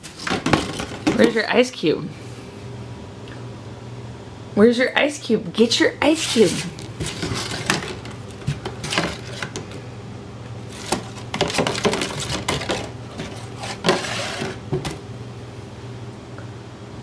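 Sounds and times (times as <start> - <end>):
steady low hum: 0.0 - 17.0
cat scratching cardboard box: 6.3 - 9.6, 10.7 - 14.7.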